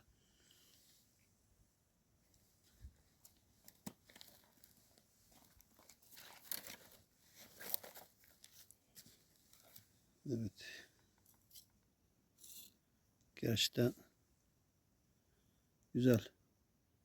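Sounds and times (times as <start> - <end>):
rustling and crackling: 2.3 - 9.9.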